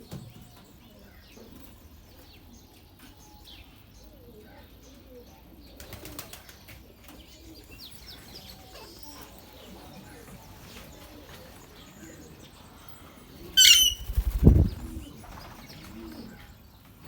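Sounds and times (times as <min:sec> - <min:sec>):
parrots chirping and whistling: 0:13.6 - 0:14.2
wing flaps: 0:13.7 - 0:15.6.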